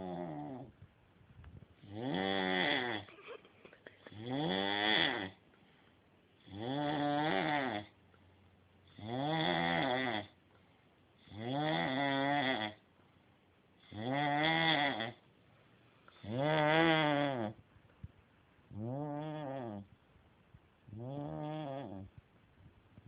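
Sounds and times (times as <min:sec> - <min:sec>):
man snoring: 0:01.8 - 0:03.1, 0:04.1 - 0:05.4, 0:06.4 - 0:07.9, 0:09.0 - 0:10.3, 0:11.2 - 0:12.8, 0:13.9 - 0:15.2, 0:16.2 - 0:17.6, 0:18.8 - 0:19.8, 0:21.0 - 0:22.0.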